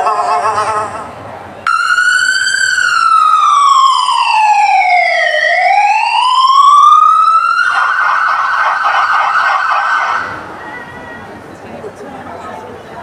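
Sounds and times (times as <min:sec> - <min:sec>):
siren wailing: 0:00.0 - 0:01.1, 0:01.7 - 0:10.4
siren fast warbling yelp: 0:01.7 - 0:10.4.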